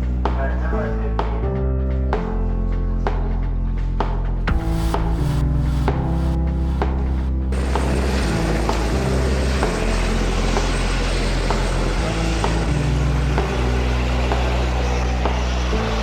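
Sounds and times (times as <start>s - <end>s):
background music with slow beat: 0.0s - 16.0s
helicopter engine and rotors: 7.6s - 16.0s.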